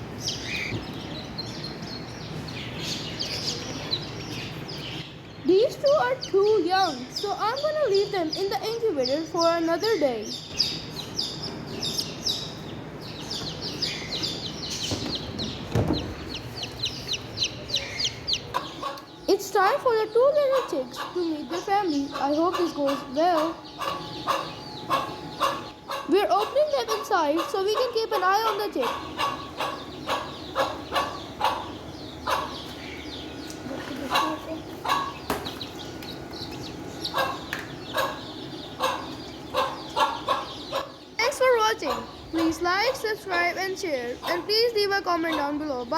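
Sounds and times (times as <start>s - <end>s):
chicks peeping: 0.0s - 45.9s
dull bump: 14.9s - 16.4s.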